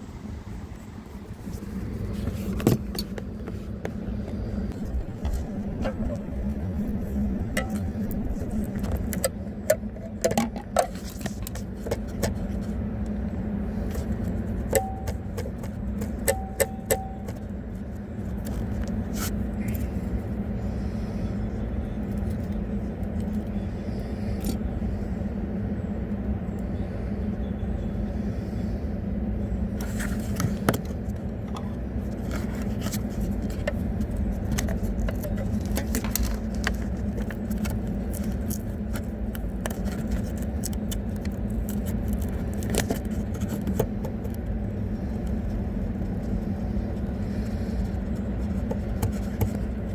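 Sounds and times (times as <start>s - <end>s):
road rumble inside car: 0.0s - 49.9s.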